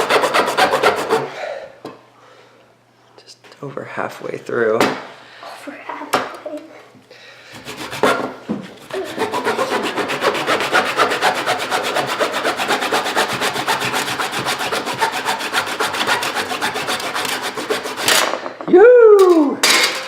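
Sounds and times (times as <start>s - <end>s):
saw rasping through ball core: 0.0s - 1.3s, 7.5s - 18.3s.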